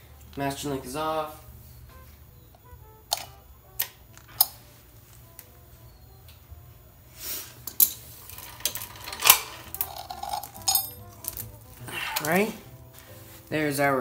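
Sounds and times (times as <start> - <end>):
chain scraping rattle: 7.6 - 12.6
metal chain clinking: 7.6 - 12.6.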